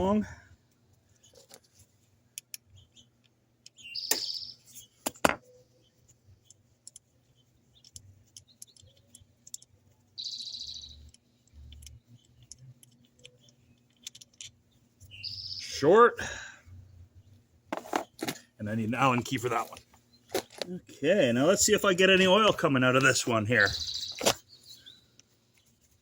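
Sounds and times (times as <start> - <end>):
bird chirping: 2.6 - 16.1, 18.0 - 25.9.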